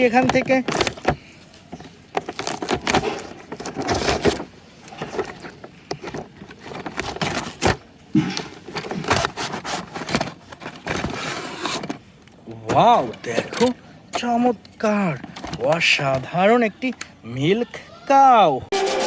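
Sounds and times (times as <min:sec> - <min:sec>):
packaging scraping and rustling: 0:00.0 - 0:12.1.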